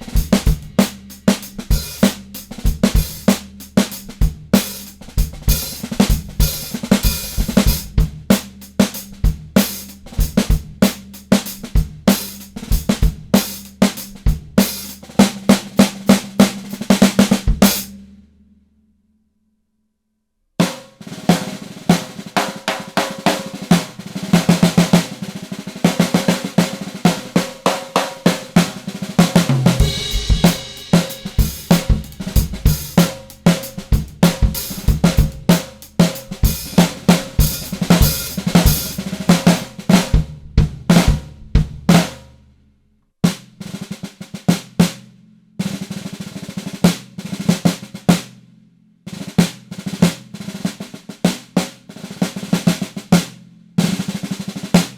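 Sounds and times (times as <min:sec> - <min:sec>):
snare drum rolls: 0:00.0 - 0:17.9, 0:20.6 - 0:42.2
bass drum hits: 0:29.7 - 0:33.2.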